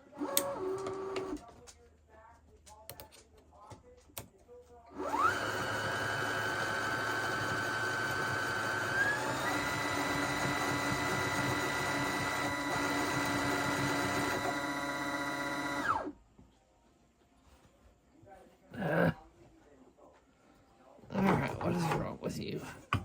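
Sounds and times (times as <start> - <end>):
sewing machine motor whining: 0.1 - 1.4, 4.9 - 16.1.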